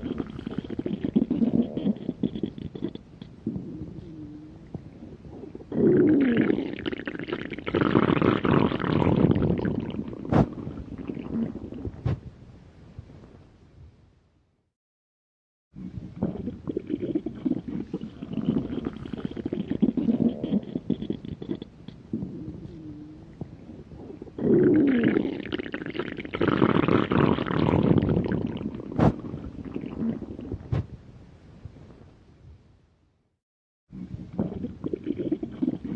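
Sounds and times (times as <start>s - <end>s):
stomach growling: 0.0s - 12.3s, 15.8s - 31.0s, 33.9s - 35.9s
short stomach pops: 10.2s - 10.7s, 11.8s - 12.3s, 28.9s - 29.4s, 30.4s - 31.0s.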